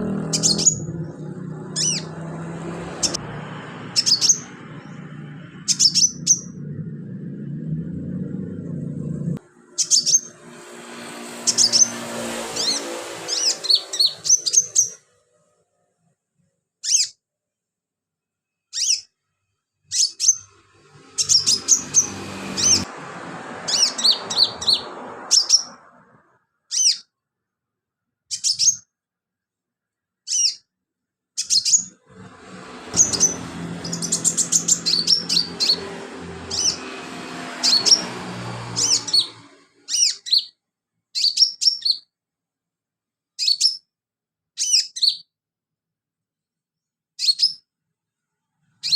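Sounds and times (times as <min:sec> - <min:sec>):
bird chirping and twittering: 0:00.2 - 0:03.2, 0:03.9 - 0:06.8, 0:09.6 - 0:10.7, 0:11.4 - 0:15.0, 0:19.9 - 0:22.9, 0:23.6 - 0:25.8, 0:28.3 - 0:28.8, 0:31.4 - 0:40.5, 0:41.2 - 0:42.0, 0:43.4 - 0:43.8.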